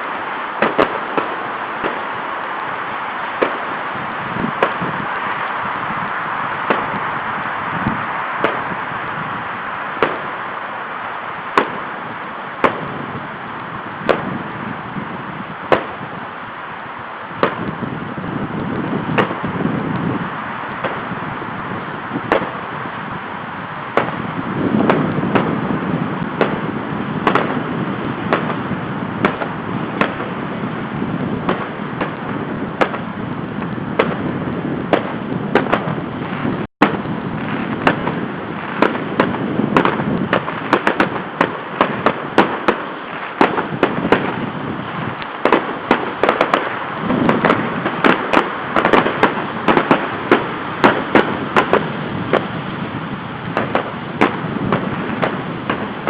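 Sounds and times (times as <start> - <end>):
background rumble: 0.0 - 56.0
firework pops and bangs: 0.6 - 2.2, 3.4 - 3.8, 4.4 - 5.4, 6.6 - 7.1, 7.8 - 8.9, 9.9 - 10.4, 11.5 - 13.2, 14.0 - 14.5, 15.7 - 16.2, 17.4 - 17.8, 18.6 - 20.2, 20.8 - 21.4, 22.1 - 22.8, 23.9 - 30.5, 31.1 - 52.8, 53.5 - 56.0.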